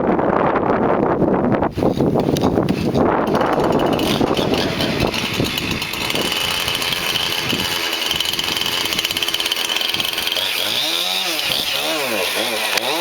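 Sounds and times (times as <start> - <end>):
wind on microphone: 0.0 - 9.3
chainsaw idling: 2.7 - 13.0.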